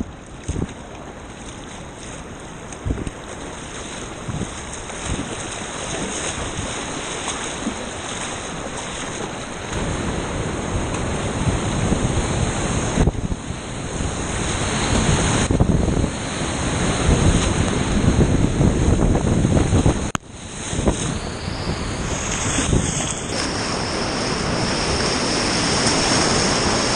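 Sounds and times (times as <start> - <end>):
wind buffeting microphone: 0.0 - 26.9
river whitewater rushing: 1.9 - 13.0, 20.8 - 26.9.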